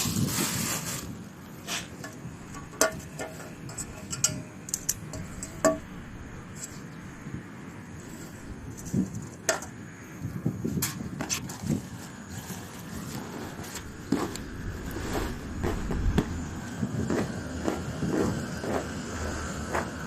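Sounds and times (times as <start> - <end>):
low rumble: 13.5 - 19.6.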